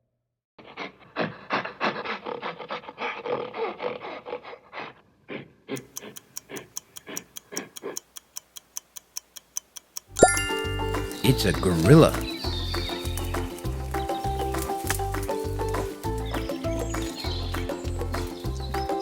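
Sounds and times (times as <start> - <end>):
countdown timer ticking: 5.8 - 12.3.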